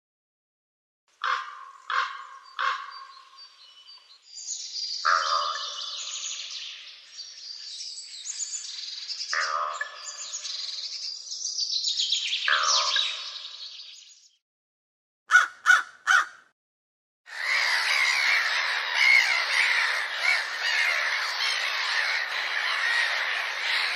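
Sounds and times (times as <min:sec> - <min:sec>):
crow cawing: 0:01.2 - 0:03.0, 0:15.3 - 0:16.5, 0:17.3 - 0:23.9
small birds chirping: 0:01.7 - 0:14.4, 0:17.3 - 0:23.9.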